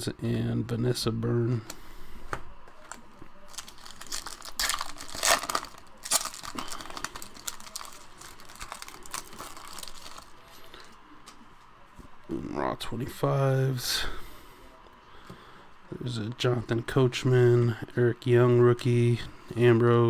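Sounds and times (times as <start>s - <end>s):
wrapper tearing and crinkling: 2.8s - 10.5s.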